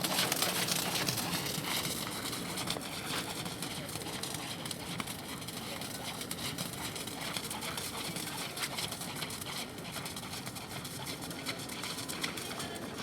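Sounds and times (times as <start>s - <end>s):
horse hoofbeats: 0.0s - 13.0s.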